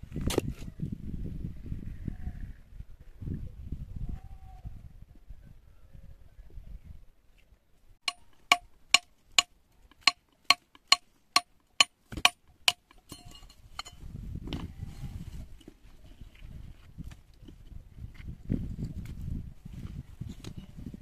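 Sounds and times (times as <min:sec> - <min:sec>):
hammer blows ringing: 0:08.1 - 0:08.7.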